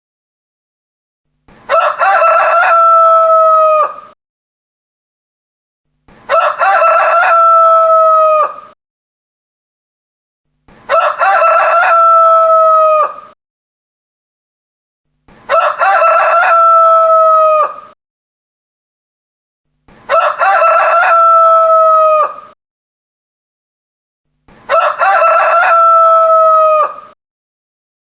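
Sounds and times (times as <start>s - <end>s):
rooster crowing: 1.7s - 4.2s, 6.3s - 8.8s, 10.9s - 13.4s, 15.5s - 18.0s, 20.1s - 22.6s, 24.7s - 27.2s.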